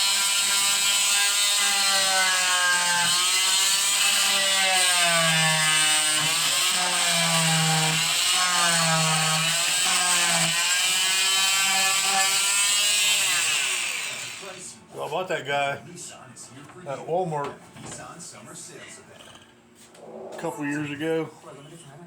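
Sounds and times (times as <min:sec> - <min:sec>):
oscillating multi-tool buzzing: 0:00.0 - 0:14.6.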